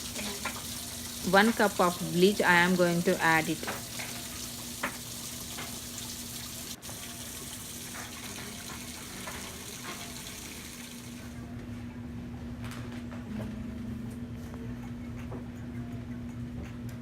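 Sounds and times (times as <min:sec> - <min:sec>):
water rushing into washing machine: 0:00.0 - 0:11.4.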